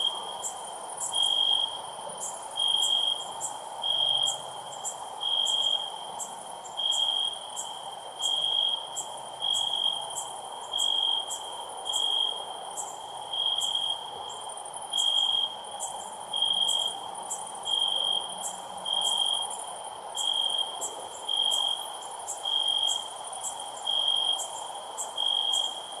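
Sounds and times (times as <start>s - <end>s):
cricket chirping: 0.0s - 26.0s
insects ticking: 0.0s - 26.0s
steady background hiss: 0.0s - 26.0s.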